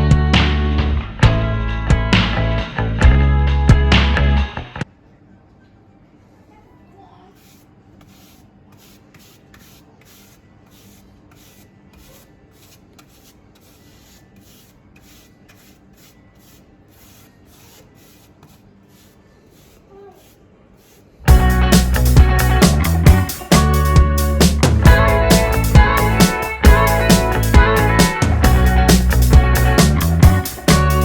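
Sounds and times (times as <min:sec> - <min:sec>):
loud guitar music: 0:00.0 - 0:04.8, 0:21.3 - 0:31.0
paintbrush rasping on wall: 0:07.3 - 0:21.2.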